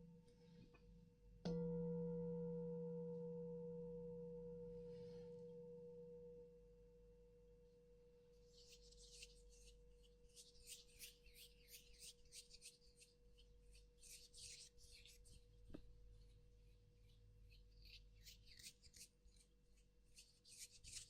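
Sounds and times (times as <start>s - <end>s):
tuning fork ringing: 1.5s - 7.6s
scratchy rubbing strokes: 8.4s - 16.3s, 17.0s - 21.0s.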